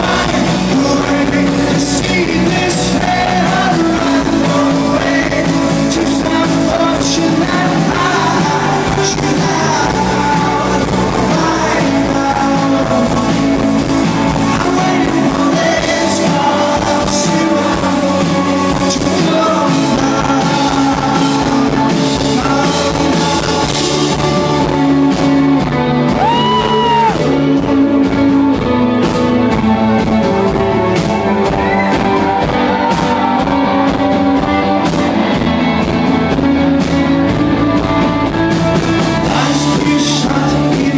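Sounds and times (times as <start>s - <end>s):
lead vocals singing: 0.0s - 28.8s, 30.4s - 40.9s
live rock band playing: 0.0s - 40.9s
steady drum beat: 0.0s - 40.9s.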